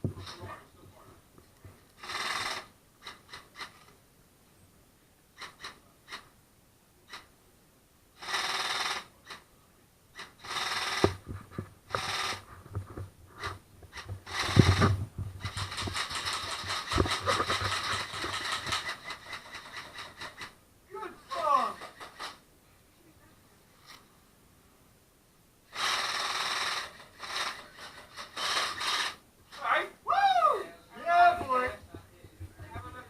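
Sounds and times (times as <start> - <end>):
airsoft guns firing: 13.9 - 20.6.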